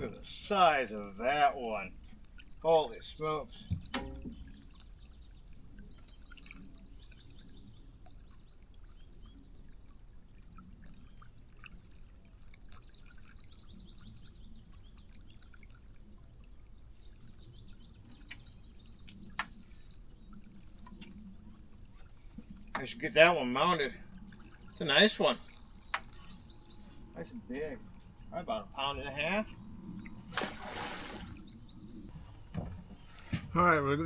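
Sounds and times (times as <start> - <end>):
high-pitched insect chorus: 0.0 - 34.0
faint ticks: 17.3 - 23.0, 25.4 - 27.2.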